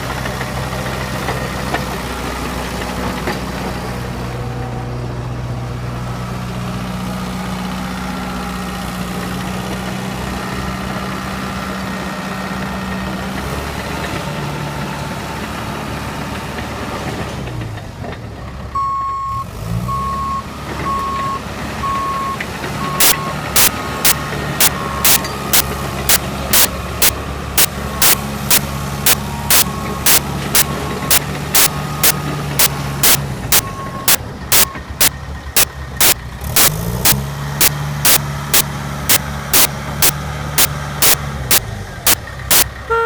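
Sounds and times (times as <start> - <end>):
reversing alarm beeping: 18.8 - 41.6, 42.5 - 43.0
diesel engine running: 19.8 - 43.0.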